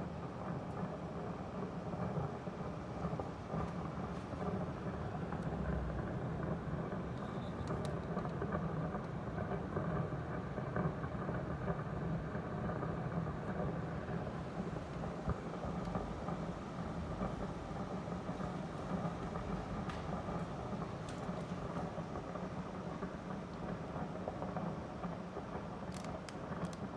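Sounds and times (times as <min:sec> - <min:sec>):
air conditioner gurgling rumble: 0:00.0 - 0:26.9.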